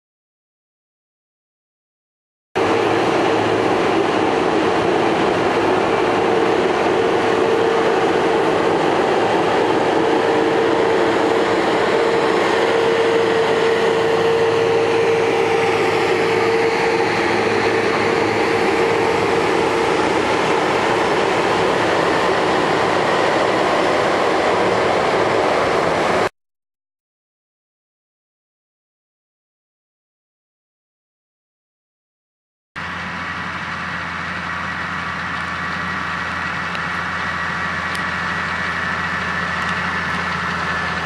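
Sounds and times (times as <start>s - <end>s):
harvesting machinery running: 2.6s - 26.3s, 32.8s - 41.0s.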